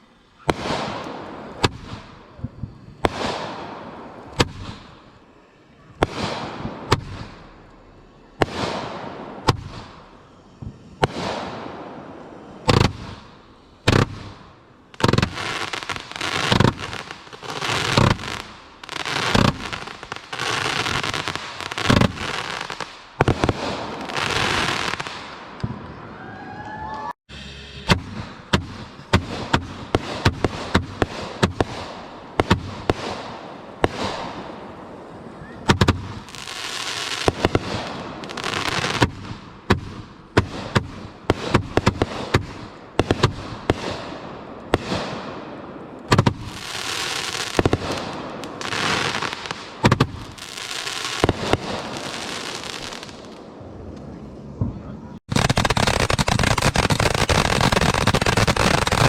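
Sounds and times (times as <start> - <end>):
firework launches and bursts: 0.0 - 26.0, 27.3 - 53.4, 55.3 - 59.0
firework crackle and hiss: 0.0 - 26.1, 27.3 - 54.5, 55.2 - 59.0
dense rushing noise: 27.3 - 30.8.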